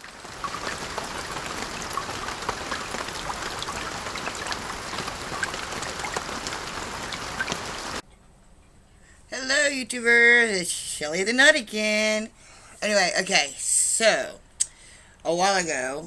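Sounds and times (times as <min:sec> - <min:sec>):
steady rain: 0:00.0 - 0:08.0.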